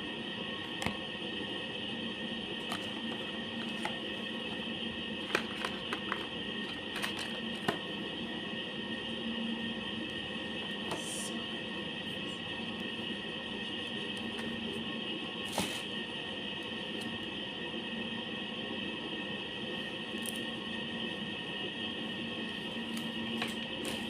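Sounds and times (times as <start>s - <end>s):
steady background hum: 0.0s - 24.0s
packaging clicks and knocks: 5.2s - 7.8s.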